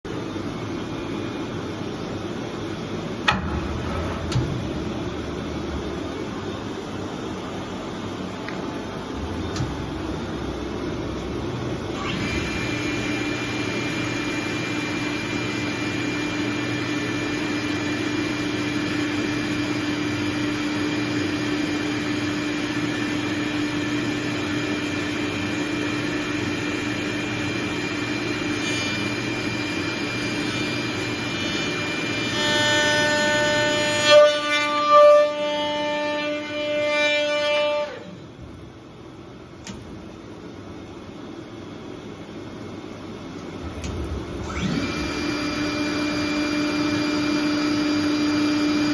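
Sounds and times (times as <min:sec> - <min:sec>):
machine mechanical whine and hum: 0:00.1 - 0:48.9.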